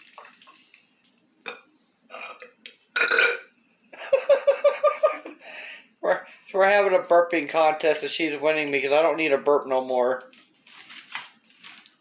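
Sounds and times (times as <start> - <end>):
person burping: 1.4 - 3.5.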